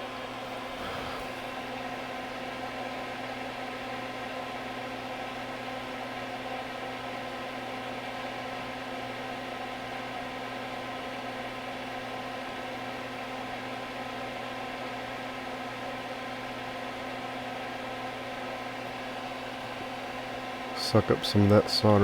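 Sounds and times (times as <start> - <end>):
extractor fan humming: 0.0 - 3.6, 16.0 - 22.0.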